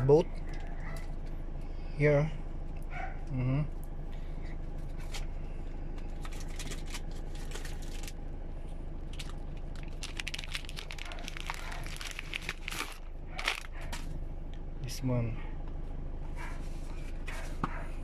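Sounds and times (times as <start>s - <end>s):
steady low hum: 0.0s - 18.0s
plastic packaging crinkling: 6.1s - 8.2s, 9.1s - 14.0s.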